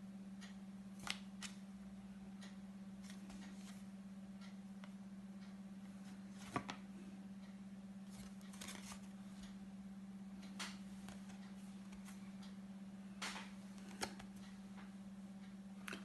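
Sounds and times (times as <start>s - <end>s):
steady low hum: 0.0s - 16.0s
card clicking and rustling: 8.1s - 9.1s, 13.2s - 14.4s.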